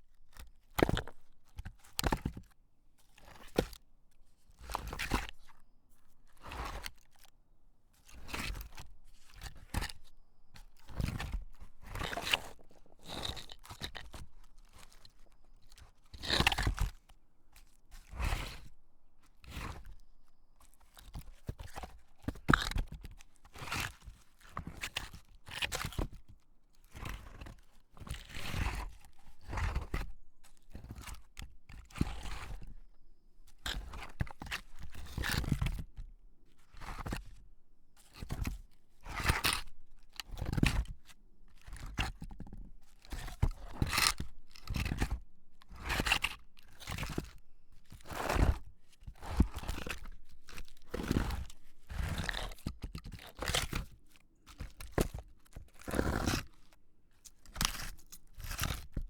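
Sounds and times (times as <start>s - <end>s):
log scraping against a boulder: 10.9s - 14.3s, 48.0s - 48.6s, 49.2s - 53.9s, 54.9s - 56.5s.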